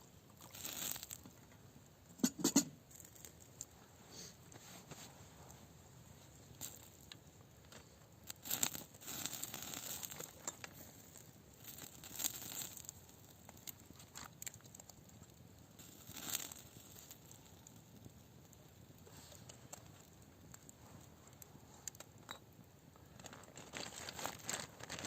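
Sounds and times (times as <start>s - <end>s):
rustling and crinkling: 0.3s - 1.6s, 2.9s - 22.3s, 22.9s - 25.0s
tearing or crumpling noise: 0.4s - 1.4s, 6.5s - 18.1s, 23.0s - 25.0s.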